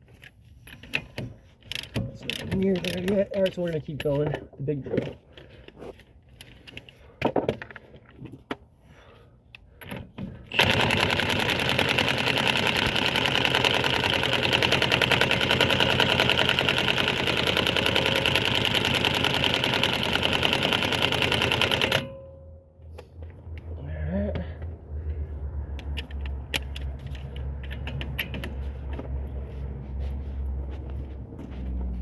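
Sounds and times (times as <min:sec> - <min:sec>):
power drill rattling: 0:01.6 - 0:04.3, 0:10.3 - 0:22.1.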